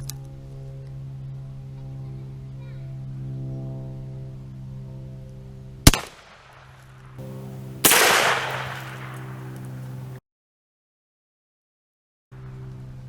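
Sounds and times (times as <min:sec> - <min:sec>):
background music: 0:07.2 - 0:10.2
shotgun shots: 0:07.5 - 0:10.2.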